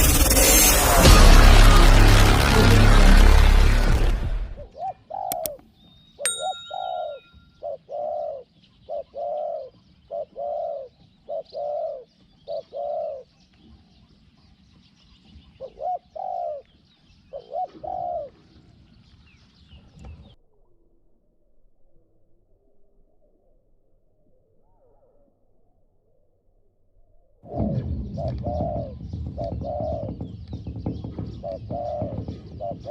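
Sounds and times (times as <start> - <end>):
sharp clicks: 5.3 - 5.6
dove cooing: 7.6 - 13.2, 17.4 - 18.4.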